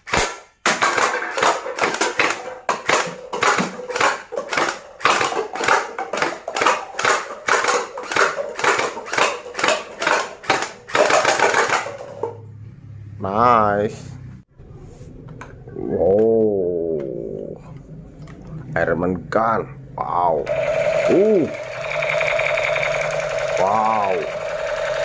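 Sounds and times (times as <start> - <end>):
toy gun firing: 0.0 - 12.2, 20.5 - 25.0.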